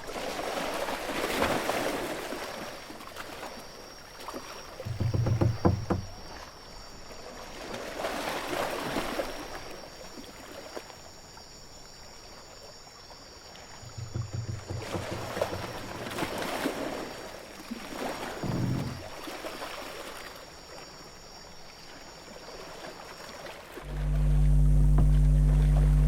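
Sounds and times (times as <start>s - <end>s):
low rumble: 23.9s - 26.0s.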